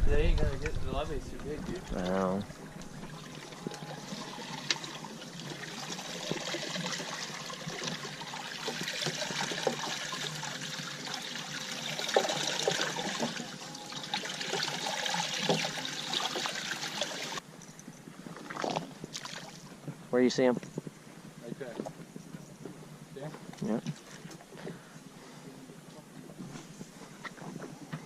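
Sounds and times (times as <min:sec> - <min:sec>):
water trickling and splashing: 0:00.4 - 0:17.4, 0:18.3 - 0:19.8.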